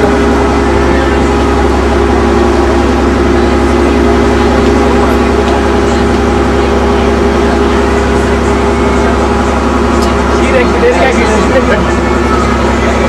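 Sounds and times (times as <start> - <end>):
large engine droning: 0.0 - 13.0.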